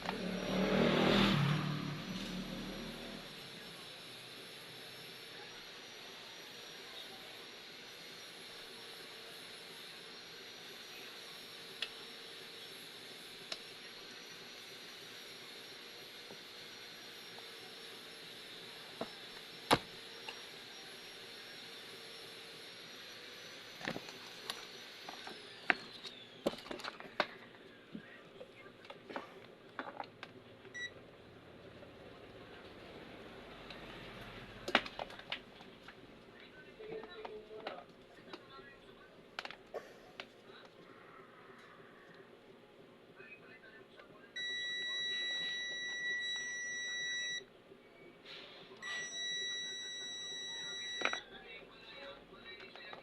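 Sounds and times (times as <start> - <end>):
electric motor fan whirring: 0.0 - 53.0
electronic buzzer beep: 44.4 - 47.5, 48.8 - 51.2.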